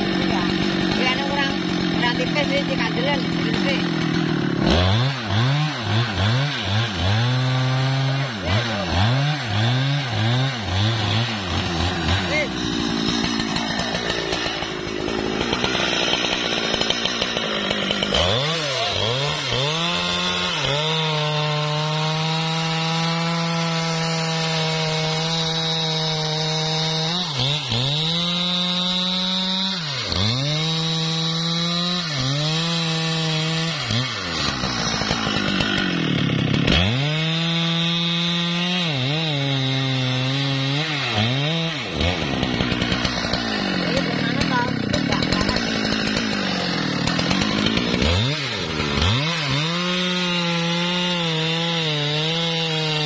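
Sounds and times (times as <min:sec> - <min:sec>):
chainsaw cutting wood: 0:00.0 - 0:53.0.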